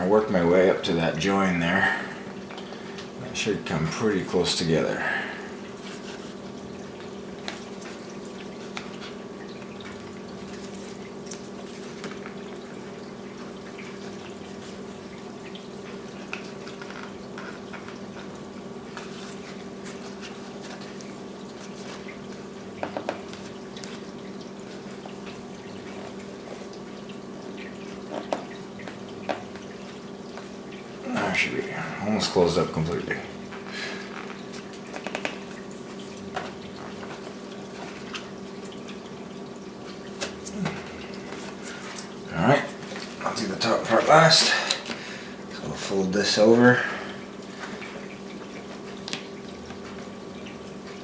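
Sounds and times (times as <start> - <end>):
steady background hum: 0.0 - 51.0
vinyl sticker crackling and tapping: 34.1 - 38.3.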